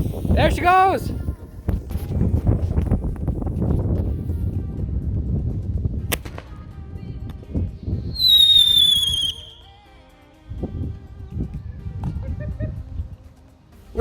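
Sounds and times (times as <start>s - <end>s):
firework crack: 6.1s - 6.8s, 8.2s - 9.8s
falling high whistle: 8.2s - 9.8s.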